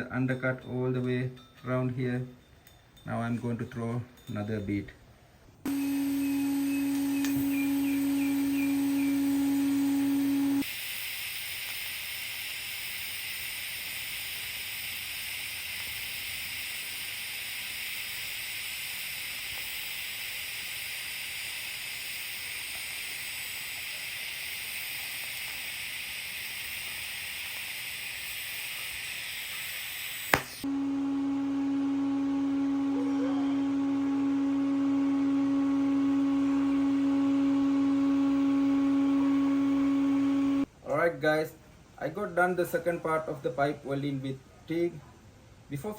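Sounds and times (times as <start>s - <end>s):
welder click: 5.7s - 30.7s
welding arc hissing: 5.7s - 30.7s.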